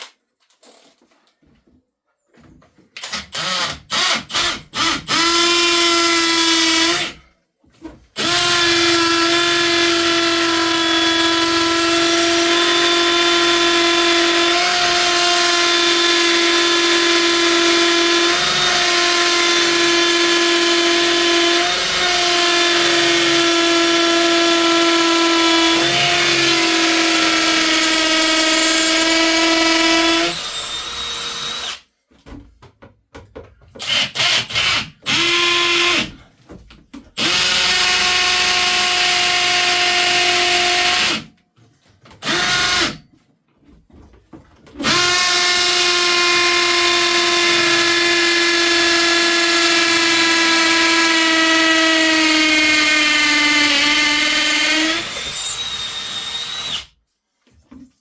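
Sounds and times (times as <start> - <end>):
power drill whining: 3.0 - 7.2, 8.2 - 31.8, 42.2 - 43.0, 44.8 - 57.0.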